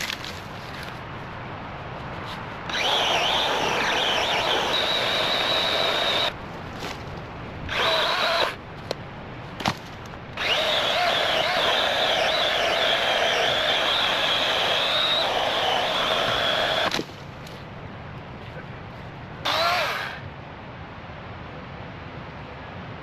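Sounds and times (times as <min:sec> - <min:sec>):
electric chainsaw cutting wood: 0:02.7 - 0:06.3, 0:07.7 - 0:08.6, 0:10.4 - 0:17.0, 0:19.5 - 0:20.2.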